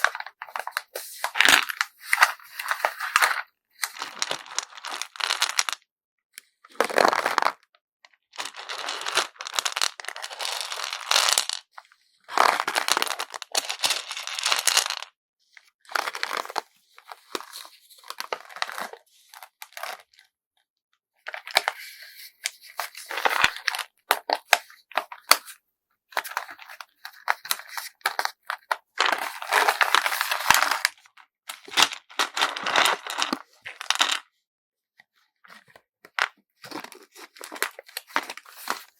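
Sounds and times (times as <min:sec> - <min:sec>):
packaging crinkling and rustling: 0:26.2 - 0:34.2, 0:35.6 - 0:38.9.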